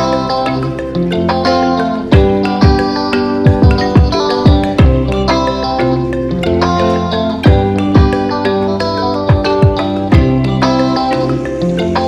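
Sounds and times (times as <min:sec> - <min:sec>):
melodic background music: 0:00.0 - 0:12.0.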